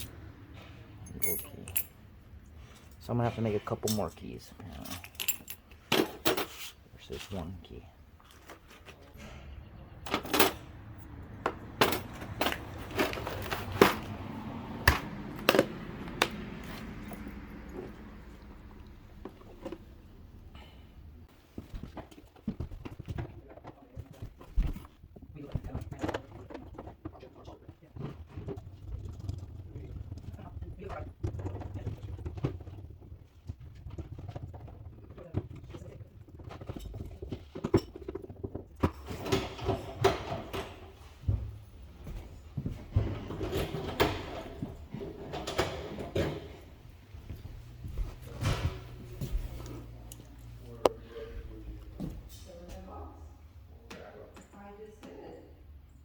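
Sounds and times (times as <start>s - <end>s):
hard objects clicking and knocking: 10.1s - 18.0s, 21.6s - 40.8s.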